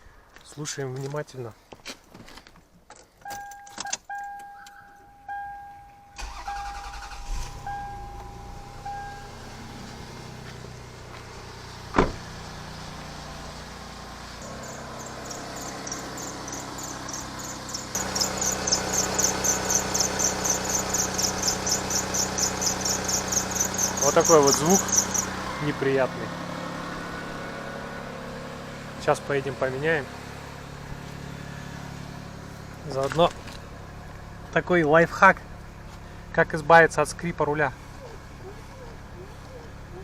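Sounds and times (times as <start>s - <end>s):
dashboard warning chime: 3.2s - 10.1s
car engine starting: 5.4s - 40.0s.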